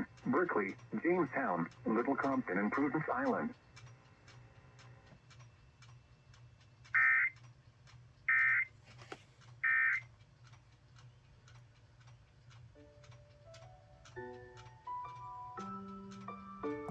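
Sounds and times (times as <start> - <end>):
faint steady ticking: 0.0 - 16.9
musical notes: 12.8 - 16.9.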